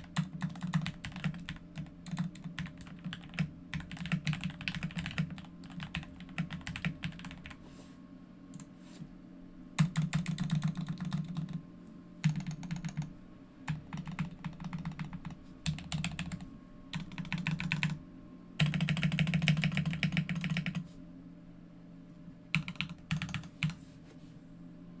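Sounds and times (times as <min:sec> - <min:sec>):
mechanical keyboard typing: 0:00.0 - 0:07.6, 0:09.8 - 0:11.6, 0:12.2 - 0:13.1, 0:13.7 - 0:18.0, 0:18.6 - 0:20.8, 0:22.5 - 0:23.8.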